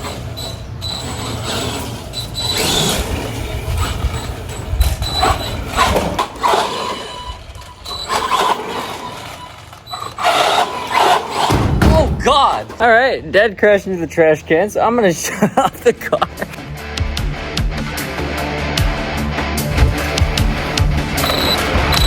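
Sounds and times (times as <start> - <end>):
electric motor whirring: 0.0 - 11.6.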